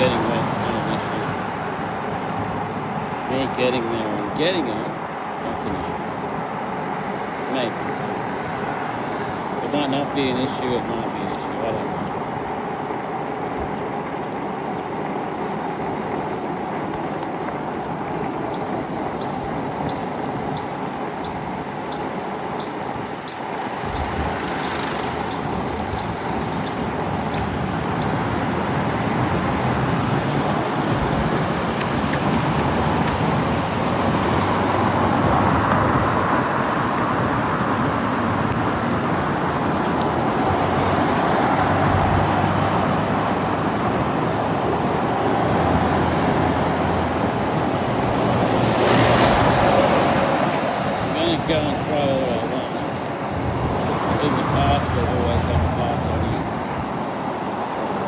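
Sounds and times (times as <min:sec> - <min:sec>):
faint regular ticking: 0:00.0 - 0:36.0
wind and road noise: 0:00.0 - 0:58.0.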